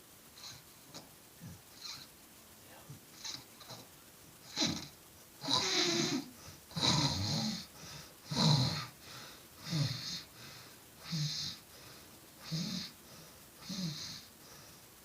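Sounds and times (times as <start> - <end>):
person snoring: 4.4 - 9.0, 9.6 - 10.3, 11.0 - 11.6, 12.4 - 13.0, 13.6 - 14.3.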